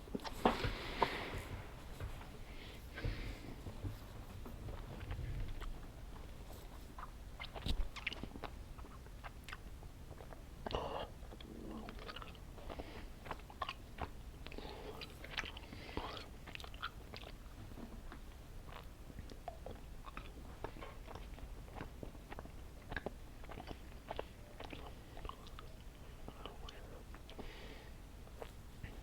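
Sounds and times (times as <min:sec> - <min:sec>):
person chewing candy: 0:04.8 - 0:29.0
wet mouth clicks: 0:07.0 - 0:17.5.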